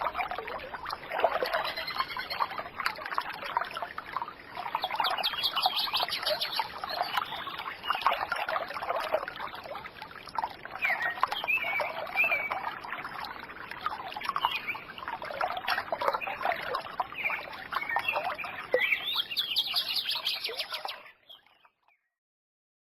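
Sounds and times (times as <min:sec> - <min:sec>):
trickling water: 0:00.0 - 0:22.0
birds chirping and calling: 0:01.4 - 0:02.6, 0:04.7 - 0:08.2, 0:10.8 - 0:12.6, 0:16.0 - 0:21.4.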